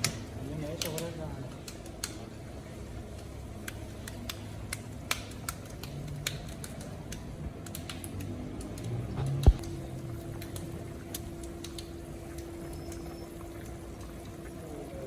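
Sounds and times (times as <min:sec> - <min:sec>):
sharp clicks and taps: 0:03.2 - 0:09.8.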